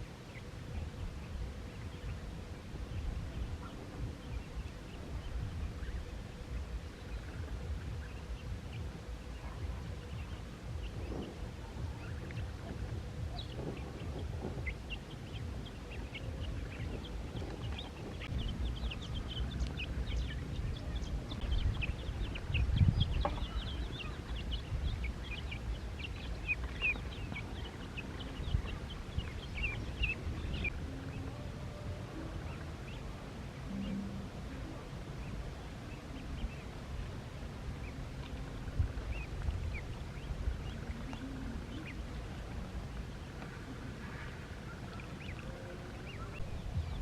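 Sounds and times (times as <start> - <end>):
ducklings peeping: 0.0 - 47.0
low rumble: 0.0 - 47.0.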